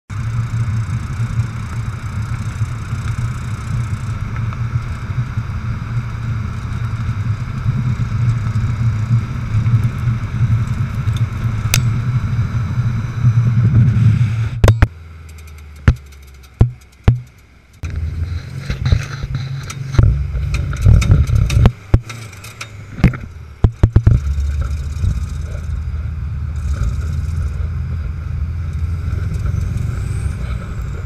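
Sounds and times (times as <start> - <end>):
car engine rumbling: 0.1 - 31.0
sharp clicks: 14.7 - 18.0
sharp knocks: 15.8 - 17.4.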